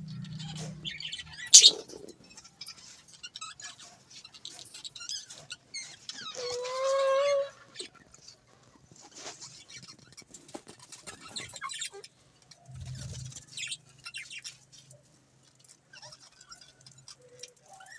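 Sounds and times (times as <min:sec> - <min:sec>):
low hum: 0:00.0 - 0:01.8
budgerigars chirping: 0:00.1 - 0:01.8.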